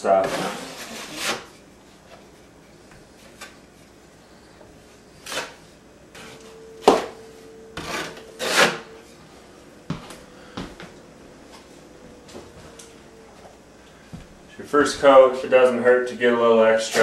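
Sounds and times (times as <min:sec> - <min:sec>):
drywall knife scraping: 0:00.0 - 0:01.7, 0:05.1 - 0:05.6, 0:07.8 - 0:09.0, 0:16.8 - 0:17.0.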